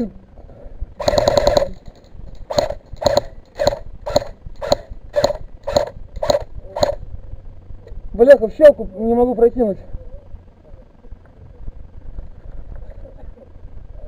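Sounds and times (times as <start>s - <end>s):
airsoft rifle full-auto burst: 1.0s - 1.8s, 2.4s - 7.0s
airsoft rifle single shots: 2.5s - 7.0s.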